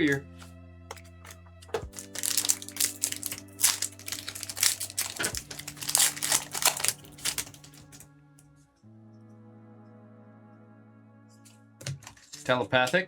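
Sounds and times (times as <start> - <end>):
foil wrapper crinkling: 0.0 - 8.0.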